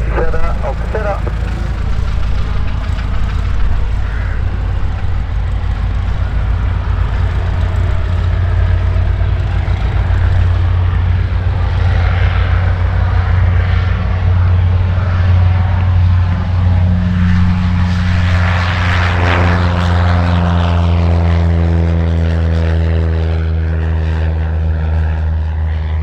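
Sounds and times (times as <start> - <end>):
small plane engine droning: 0.0 - 26.0.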